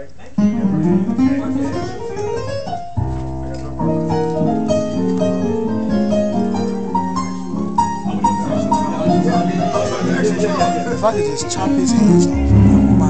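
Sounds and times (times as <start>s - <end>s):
keyboard playing piano chords: 0.0s - 13.0s.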